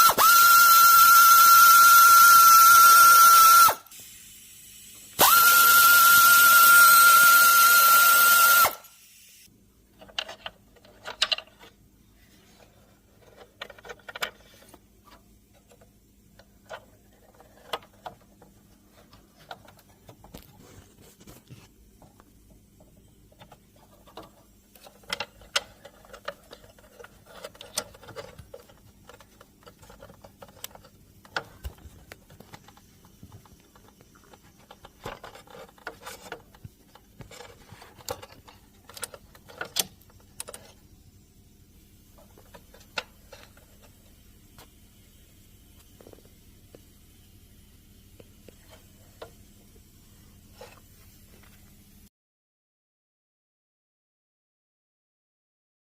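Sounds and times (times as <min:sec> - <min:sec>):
high-pitched whine and hiss: 0:00.0 - 0:09.6, 0:18.8 - 0:52.1.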